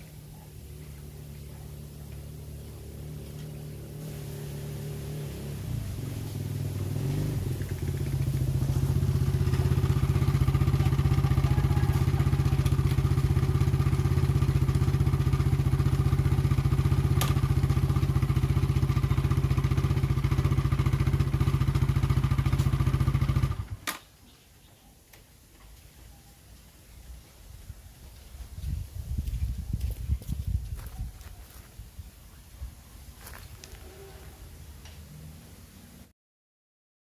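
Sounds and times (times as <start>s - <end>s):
motorcycle engine idling: 0.0s - 23.9s.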